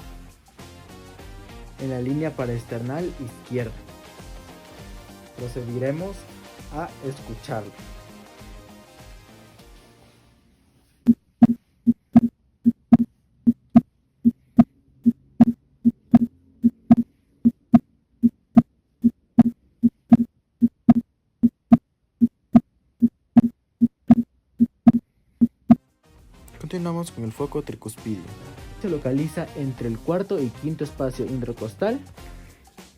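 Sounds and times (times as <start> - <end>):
heartbeat lub-dub: 15.1 - 17.8.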